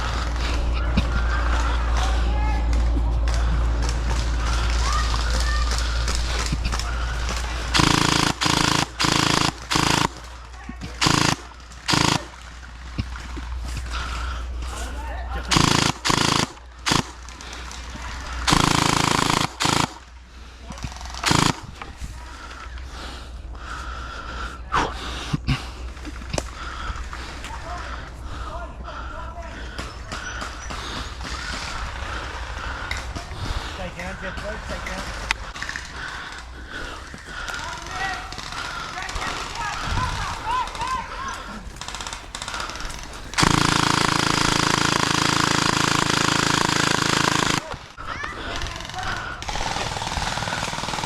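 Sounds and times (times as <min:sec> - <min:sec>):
person breathing hard: 0:00.0 - 0:12.3, 0:13.0 - 0:51.0
sharp clicks: 0:02.8 - 0:12.4, 0:15.5 - 0:17.8, 0:18.5 - 0:20.0, 0:21.2 - 0:21.9, 0:37.1 - 0:47.8
gel blaster full-auto rattle: 0:04.4 - 0:10.3, 0:11.0 - 0:12.4, 0:15.5 - 0:20.0, 0:21.2 - 0:21.8, 0:37.6 - 0:47.9, 0:48.5 - 0:51.0.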